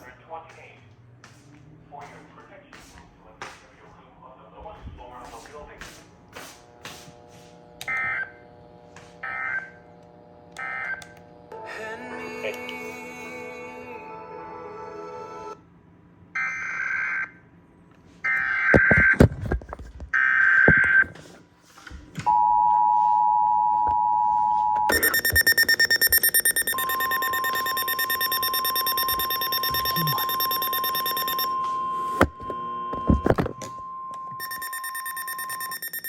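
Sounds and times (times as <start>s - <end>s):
screeching data bursts: 24.9s - 31.5s, 34.4s - 36.0s
steady single-pitch alert tone: 24.9s - 31.6s, 34.4s - 36.0s
two-tone attention signal: 24.9s - 31.6s, 34.4s - 36.0s
harsh pulsing alarm tone: 24.9s - 32.1s, 34.4s - 36.0s.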